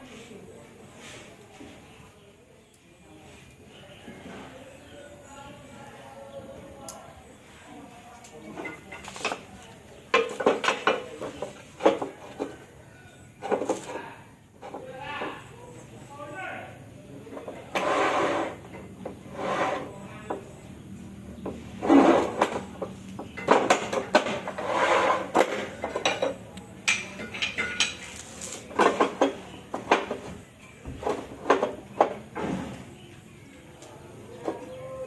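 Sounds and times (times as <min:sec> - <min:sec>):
clacks of tile and metal tools: 0:08.2 - 0:12.6, 0:21.4 - 0:30.4
tile scraping: 0:17.7 - 0:20.1, 0:21.7 - 0:22.7, 0:24.2 - 0:26.0.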